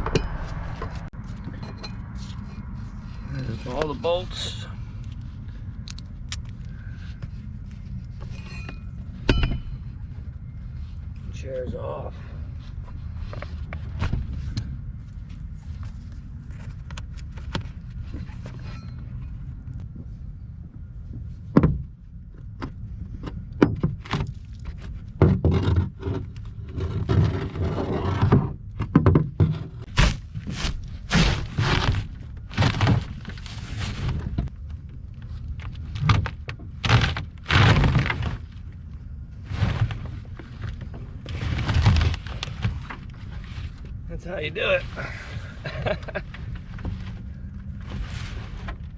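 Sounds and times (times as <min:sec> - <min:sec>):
sharp metallic clank: 0:00.0 - 0:02.0
banging scraping and clattering: 0:00.0 - 0:04.5, 0:29.1 - 0:34.5
steady low rumble: 0:00.0 - 0:25.2, 0:29.8 - 0:48.9.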